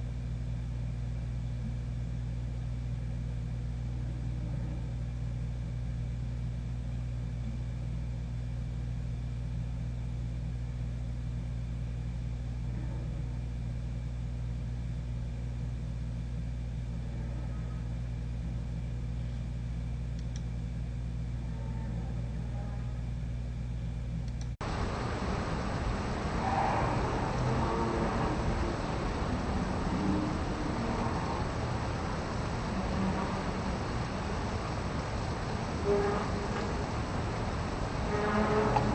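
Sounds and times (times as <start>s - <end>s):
low rumbling drone: 0.0s - 38.9s
loud rough noise: 24.6s - 38.9s.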